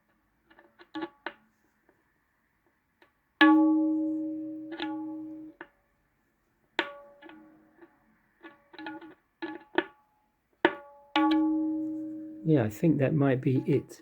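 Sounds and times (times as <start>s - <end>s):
tabla ringing strokes: 3.4s - 5.6s, 10.7s - 12.9s
tabla taps: 3.4s - 5.7s, 10.6s - 12.4s.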